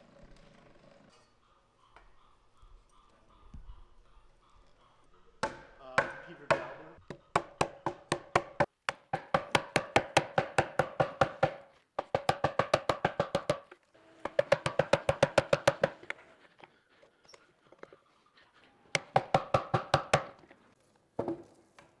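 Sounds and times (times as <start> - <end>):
chisel strikes into wood: 5.4 - 13.6, 14.2 - 16.2, 19.0 - 20.5.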